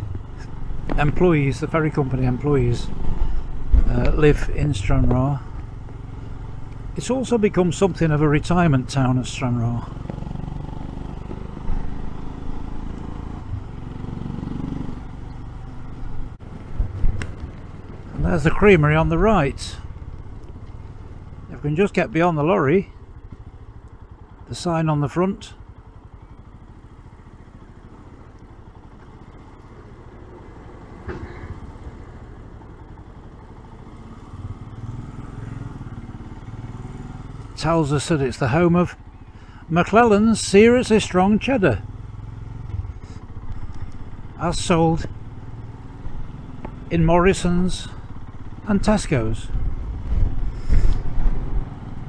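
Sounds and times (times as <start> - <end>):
motorcycle engine running: 0.0 - 52.0.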